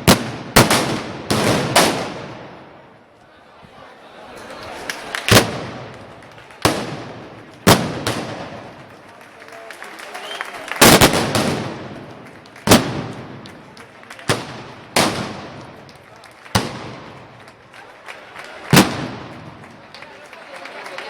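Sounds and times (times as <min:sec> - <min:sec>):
gunpowder blasts echoing: 0:00.0 - 0:02.8, 0:05.3 - 0:08.9, 0:10.8 - 0:17.5, 0:18.7 - 0:19.8.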